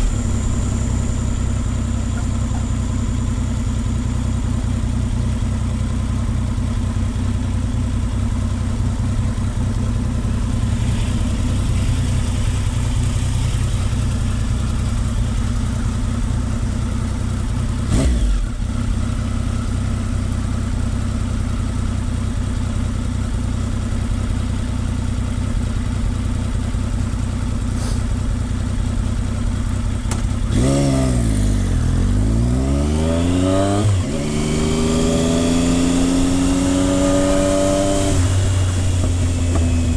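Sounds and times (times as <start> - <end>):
motorcycle engine idling: 0.0 - 32.4, 38.2 - 39.9.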